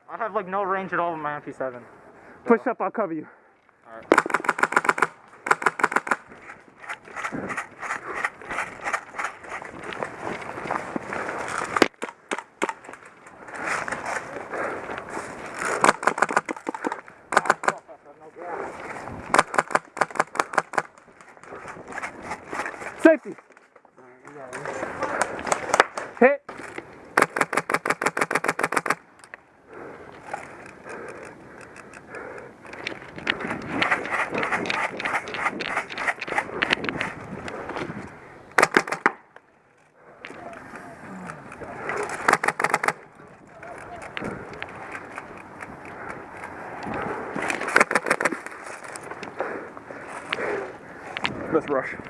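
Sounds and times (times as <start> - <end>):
sharp crack: 4.0 - 9.7, 11.4 - 14.6, 15.4 - 18.0, 19.3 - 21.4, 24.4 - 29.4, 38.5 - 39.4, 40.3 - 46.6, 47.4 - 49.6
rustling: 4.1 - 51.4
footsteps crunching on rough ground: 6.0 - 17.2
scattered clicks: 11.5 - 17.9, 19.2 - 51.4
sharp clicks: 15.6 - 17.8, 25.1 - 29.4, 40.2 - 49.3
airsoft rifle full-auto burst: 27.2 - 29.0.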